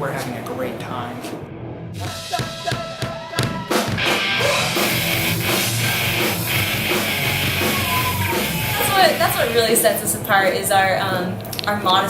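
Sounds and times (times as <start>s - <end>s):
distorted electric guitar: 1.3s - 11.7s
drum kit: 2.0s - 10.4s.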